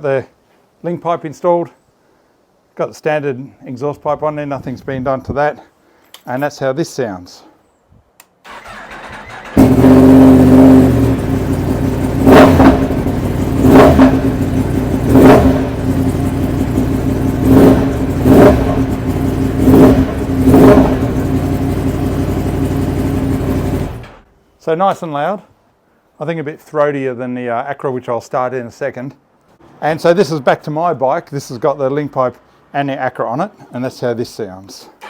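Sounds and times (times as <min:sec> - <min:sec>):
motorcycle engine revving: 0:08.5 - 0:24.2
motorcycle engine idling: 0:08.5 - 0:24.3.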